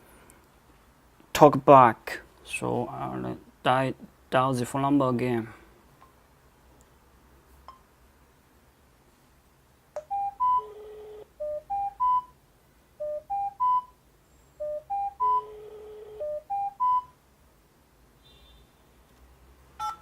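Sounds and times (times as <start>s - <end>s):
electronic ringtone beeps: 10.0s - 12.3s, 13.0s - 14.0s, 14.6s - 17.1s, 19.8s - 20.0s.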